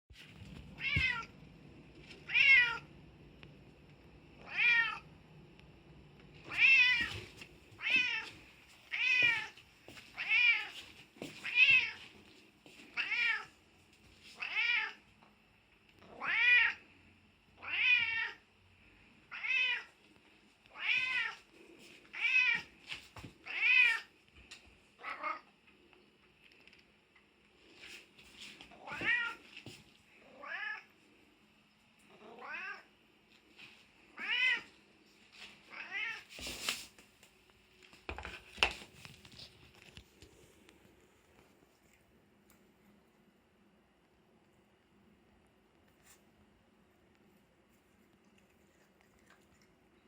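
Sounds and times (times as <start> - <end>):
cat meowing: 0.8 - 1.3, 2.3 - 2.9, 4.4 - 5.0, 6.5 - 7.2, 7.8 - 8.3, 13.0 - 13.5, 16.0 - 16.8, 17.6 - 18.4, 19.3 - 19.9, 20.7 - 21.4, 32.2 - 32.9, 34.2 - 34.7, 35.7 - 36.3.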